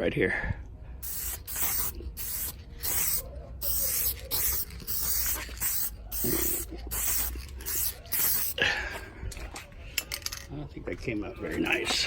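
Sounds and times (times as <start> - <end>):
spray can hissing: 1.0 - 8.6.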